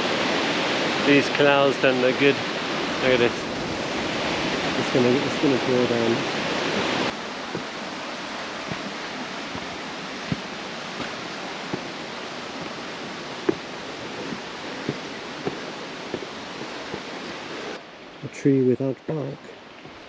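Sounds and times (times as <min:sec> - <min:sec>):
mountain stream rushing: 0:00.0 - 0:20.0
footsteps on bridge walkway: 0:06.4 - 0:17.8.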